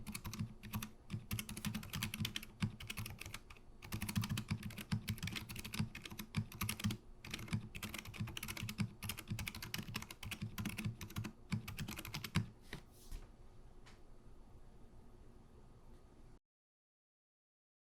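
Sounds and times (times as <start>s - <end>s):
muted keyboard typing: 0.0s - 12.5s.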